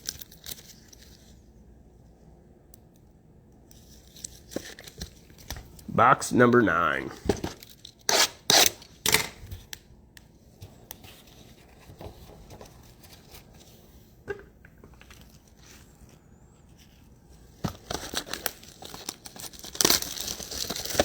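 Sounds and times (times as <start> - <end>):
packaging ripping: 17.8 - 21.0.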